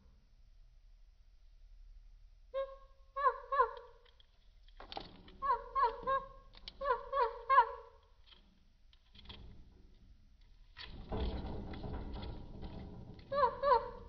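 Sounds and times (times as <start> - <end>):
bird calls: 2.6 - 4.0, 5.4 - 8.0.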